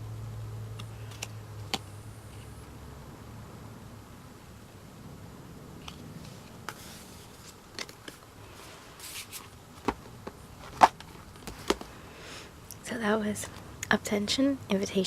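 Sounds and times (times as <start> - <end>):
paper or plastic rustling: 6.4 - 11.9.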